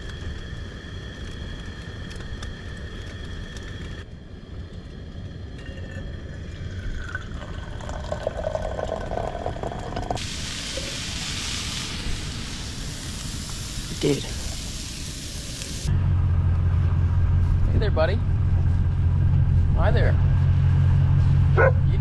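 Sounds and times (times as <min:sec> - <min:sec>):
low steady rumble: 0:00.0 - 0:22.0
water pouring and splashing: 0:06.7 - 0:15.9.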